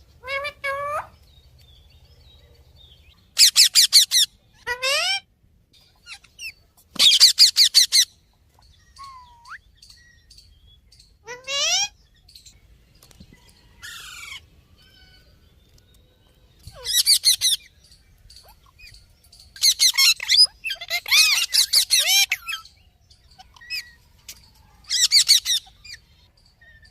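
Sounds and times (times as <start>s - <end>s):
parrot squawking and screeching: 0.2s - 1.2s, 3.4s - 5.3s, 6.0s - 8.1s, 9.0s - 9.6s, 11.2s - 12.0s, 13.8s - 15.3s, 16.7s - 17.7s, 19.6s - 22.7s, 24.8s - 26.1s.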